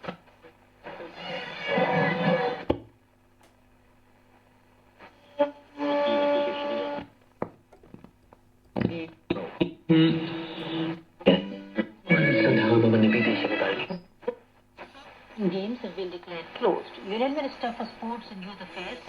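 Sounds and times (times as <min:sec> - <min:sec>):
radio station music: 0:00.0 - 0:02.7, 0:08.8 - 0:19.0
static clicks: 0:02.6 - 0:05.2, 0:07.0 - 0:12.0, 0:13.4 - 0:19.0.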